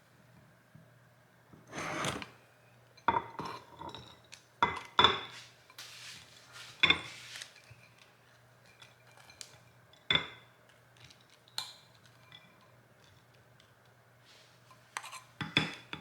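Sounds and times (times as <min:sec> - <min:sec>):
dishes clinking: 0:03.0 - 0:05.4
rustling and scraping: 0:05.2 - 0:08.1.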